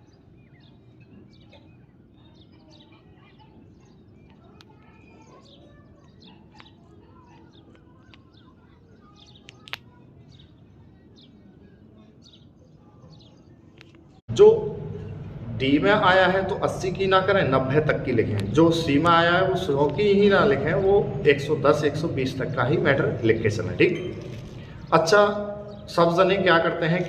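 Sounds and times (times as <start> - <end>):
birds chirping: 0.0 - 27.0
low steady hum: 14.3 - 27.0.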